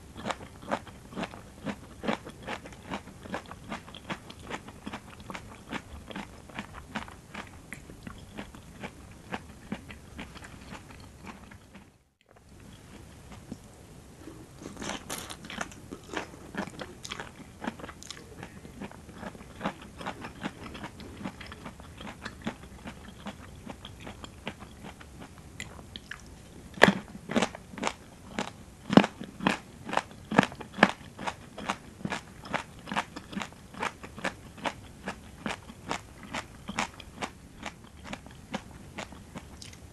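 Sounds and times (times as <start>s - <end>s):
crunchy chewing: 0.2s - 39.8s.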